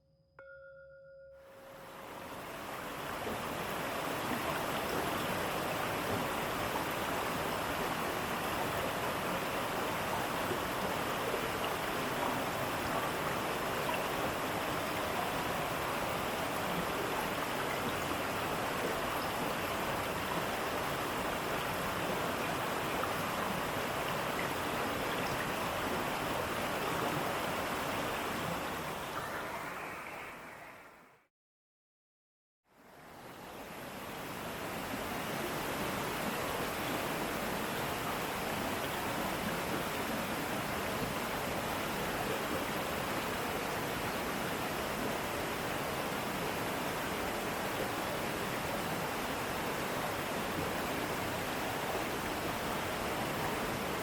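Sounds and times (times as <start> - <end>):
water rushing over rocks: 2.0 - 30.6.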